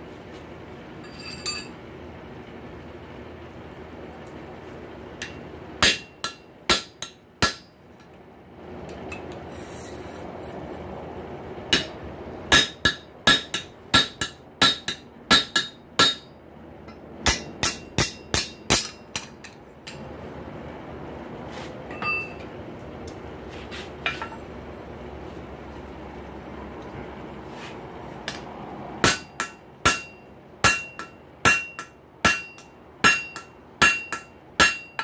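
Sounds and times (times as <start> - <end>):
hammer striking metal on anvil: 1.1 - 1.7, 5.2 - 7.8, 11.7 - 20.1, 21.9 - 22.5, 29.0 - 35.0.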